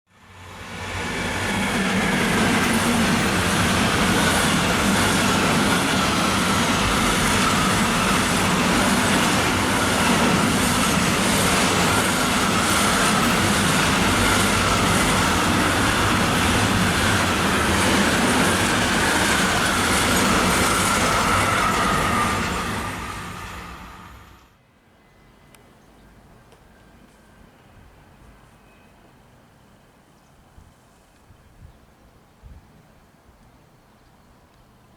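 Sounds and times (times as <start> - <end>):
rhythmic clatter of train wheels: 0.2 - 24.6
train rushing and rumbling: 0.2 - 24.6.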